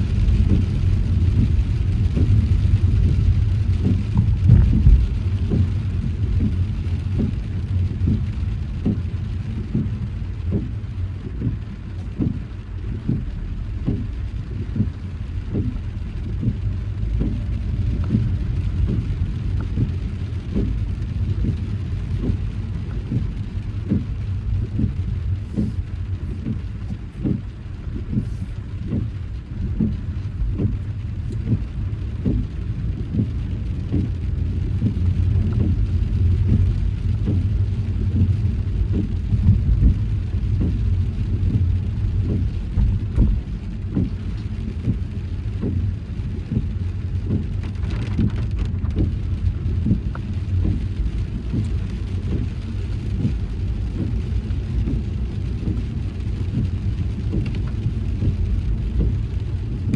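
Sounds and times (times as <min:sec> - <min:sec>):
car rumbling on the road: 0:00.0 - 0:59.9
raindrops tapping: 0:00.0 - 0:59.9.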